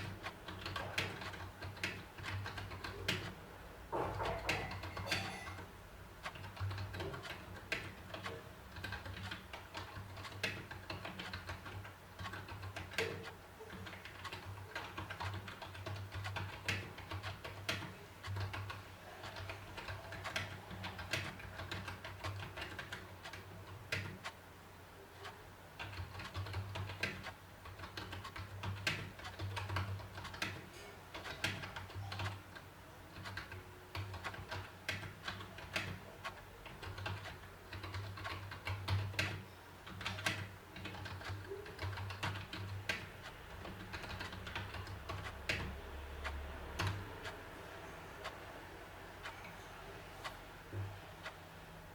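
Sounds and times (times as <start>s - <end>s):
keyboard typing clicks: 25.2s - 48.4s.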